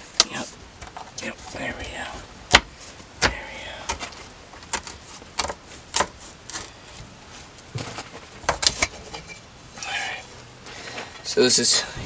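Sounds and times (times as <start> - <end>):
metal housing knocking and clunking: 7.6 - 9.6.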